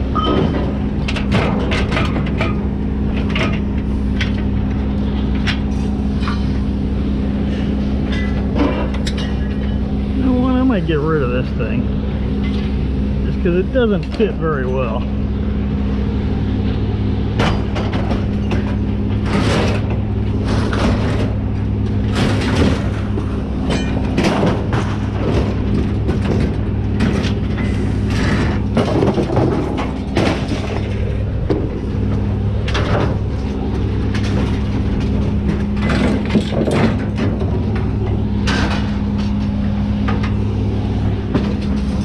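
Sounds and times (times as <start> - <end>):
vehicle engine idling: 0.0 - 42.0
scrap metal clanking: 22.1 - 40.4.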